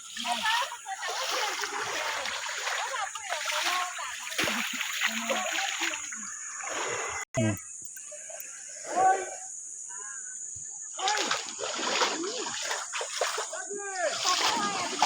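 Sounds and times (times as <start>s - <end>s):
water splashing and sloshing: 0.0s - 7.3s, 11.0s - 15.0s.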